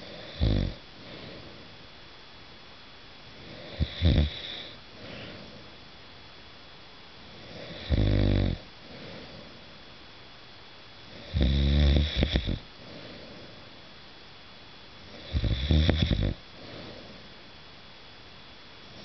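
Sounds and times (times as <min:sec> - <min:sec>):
man snoring: 0:00.0 - 0:00.8, 0:03.5 - 0:04.7, 0:07.4 - 0:08.6, 0:11.2 - 0:12.6, 0:15.2 - 0:16.4
soft breath: 0:01.0 - 0:01.8, 0:04.4 - 0:05.8, 0:08.8 - 0:09.8, 0:12.4 - 0:13.9, 0:16.5 - 0:17.4.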